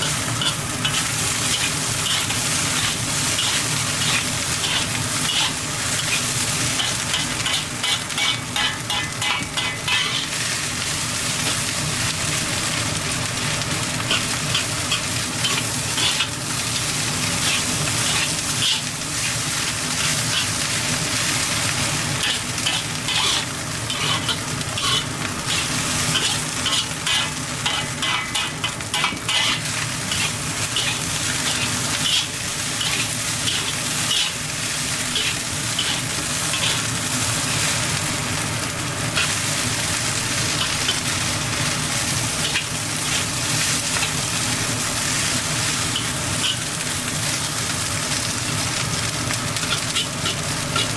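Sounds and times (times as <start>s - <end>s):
stirring strokes scraping pan: 0.0s - 10.4s, 14.0s - 21.4s, 22.2s - 38.0s
rice sizzling in a hot pan: 0.0s - 50.9s.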